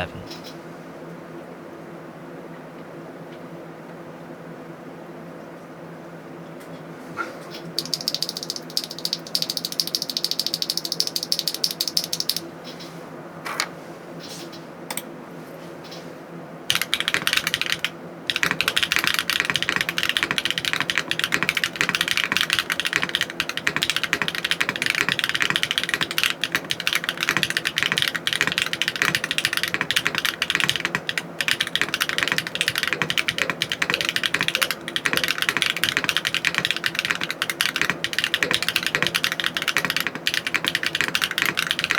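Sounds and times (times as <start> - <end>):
mechanical keyboard typing: 7.8 - 12.5, 16.7 - 41.9.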